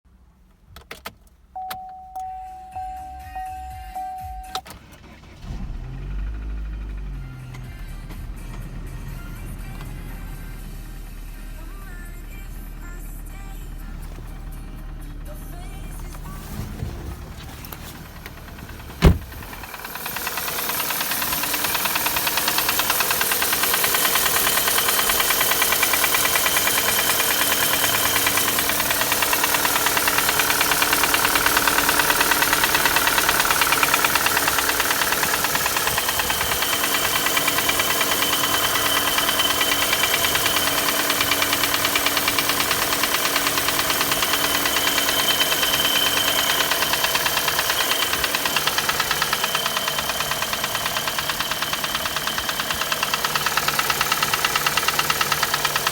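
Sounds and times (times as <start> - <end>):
car engine running: 2.6 - 55.9
fast metallic engine knock: 18.5 - 55.9.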